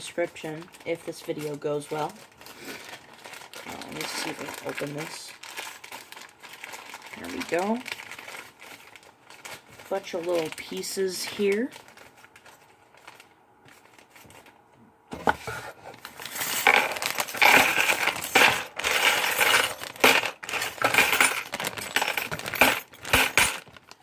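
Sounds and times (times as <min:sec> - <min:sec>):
small metal parts clinking: 0:16.2 - 0:24.0.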